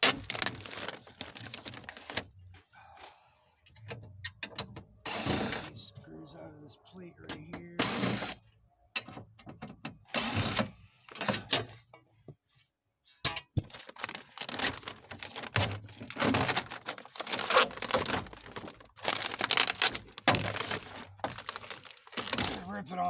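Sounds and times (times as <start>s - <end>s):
plastic crackling and rustling: 0.0s - 2.6s, 13.6s - 22.9s.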